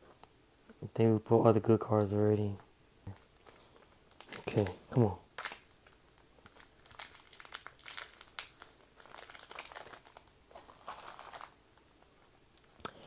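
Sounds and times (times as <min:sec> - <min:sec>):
plastic wrapper crinkling: 0:03.0 - 0:12.8.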